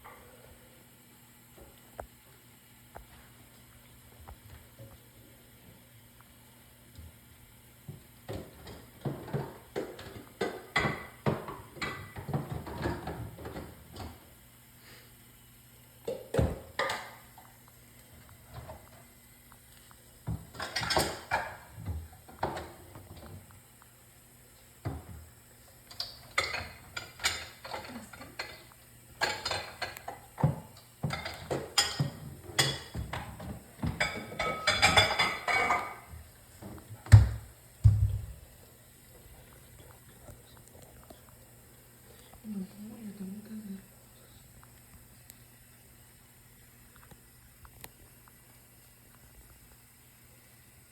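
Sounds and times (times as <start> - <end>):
dishes and cutlery clattering: 20.3 - 21.7, 25.9 - 28.6, 29.2 - 36.1.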